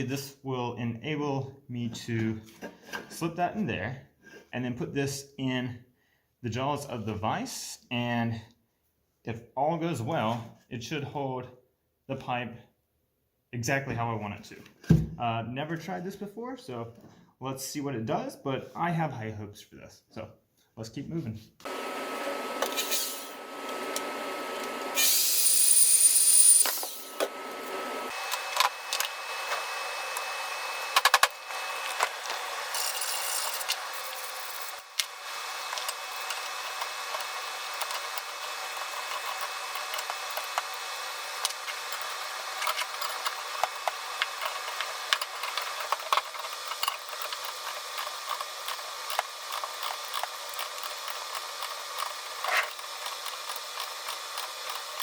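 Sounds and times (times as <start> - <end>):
metallic clicks and scrapes: 30.2 - 55.0.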